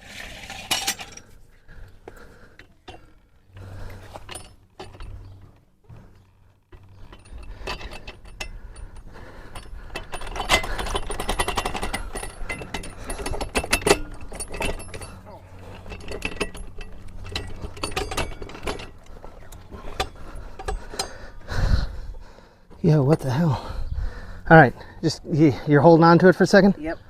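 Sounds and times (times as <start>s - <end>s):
metal motorcycle parts rattling: 0.1s - 1.4s, 2.0s - 21.5s.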